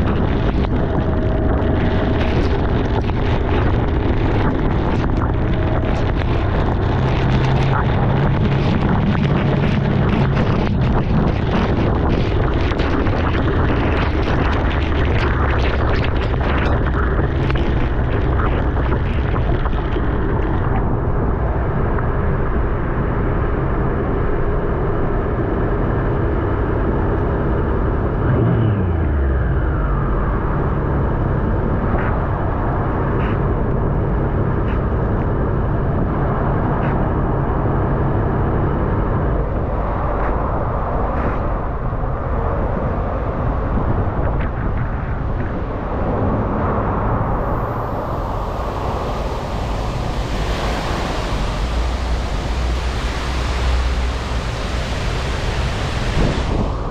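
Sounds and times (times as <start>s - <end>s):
motorbike running: 0.0s - 21.5s
falling whine: 0.0s - 56.9s
wind noise on microphone: 0.0s - 56.9s.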